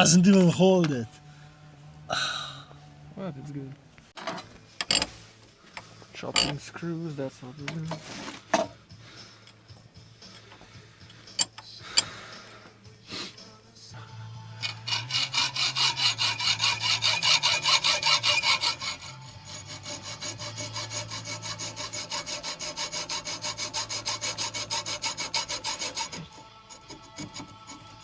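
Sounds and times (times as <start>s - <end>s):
metal screws being sawn by hand: 4.2s - 5.2s, 14.5s - 28.0s.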